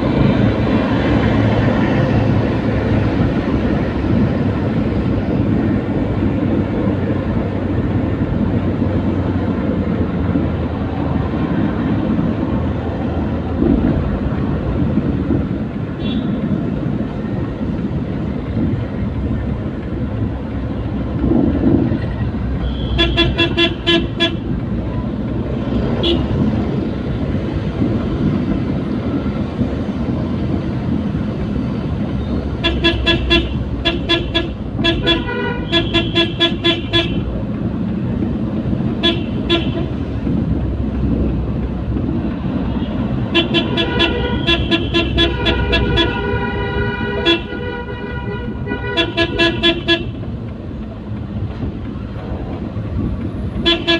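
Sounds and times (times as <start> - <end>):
vehicle engine and road rumble: 0.0 - 53.9
car horn beeps: 16.0 - 16.4, 22.6 - 24.5, 26.0 - 26.4, 32.2 - 37.3, 39.0 - 40.0, 42.8 - 50.3, 53.6 - 53.9.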